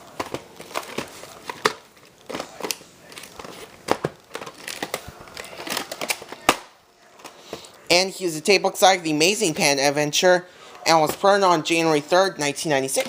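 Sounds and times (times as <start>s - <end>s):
plastic cassette case handled: 0.0s - 7.4s.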